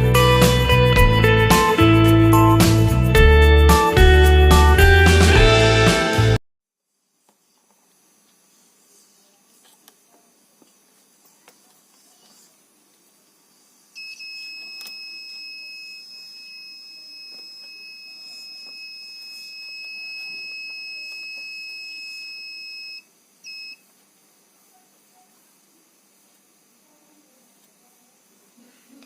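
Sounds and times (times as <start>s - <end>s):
alarm buzzer high-pitched tone: 14.0s - 23.8s
short alarm beep: 14.0s - 23.8s.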